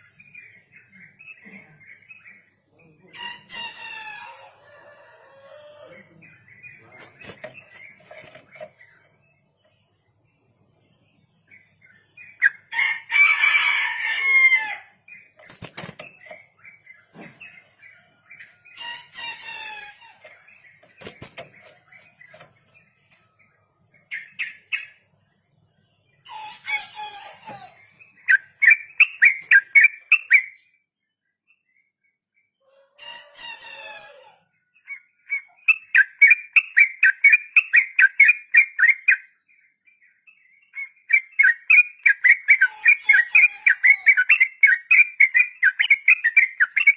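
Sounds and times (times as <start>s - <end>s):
bulbul singing: 27.3s - 32.0s, 34.8s - 46.9s.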